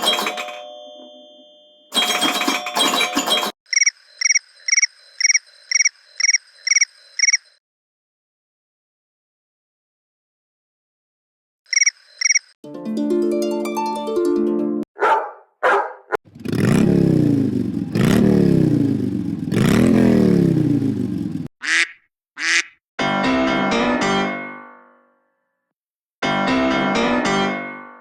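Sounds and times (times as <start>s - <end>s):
phone ringtones and alert tones: 0.0s - 3.9s.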